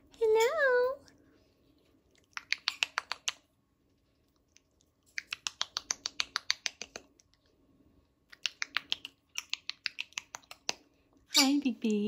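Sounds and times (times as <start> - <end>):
bird clicking rapidly: 2.3 - 3.4, 5.2 - 7.1, 8.4 - 10.8.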